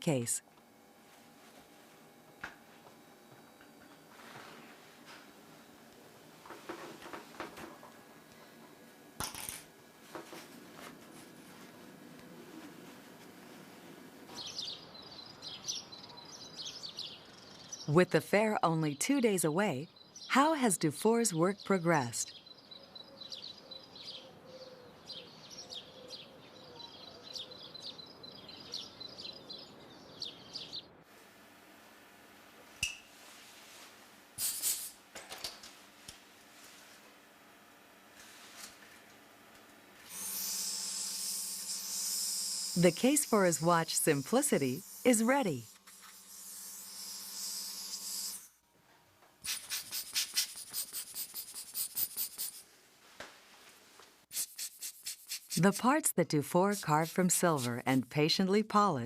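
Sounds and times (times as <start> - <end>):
small birds chirping: 14.3 - 18.0, 21.6 - 31.0
steady hiss: 33.1 - 35.1
brief hissing burst: 34.4 - 35.0, 49.4 - 52.6
quick scraping strokes: 49.4 - 52.6, 54.3 - 55.6.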